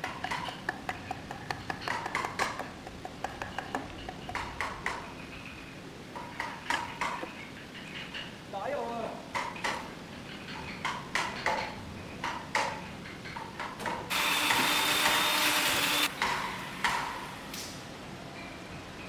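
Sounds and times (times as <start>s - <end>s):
tools knocking on wood: 0.0s - 5.5s, 6.1s - 7.4s, 9.3s - 17.2s.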